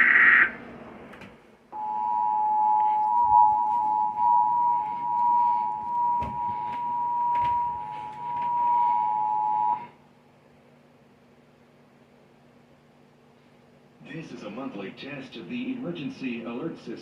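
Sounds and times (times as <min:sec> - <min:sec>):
two-tone attention signal: 0:01.8 - 0:09.9.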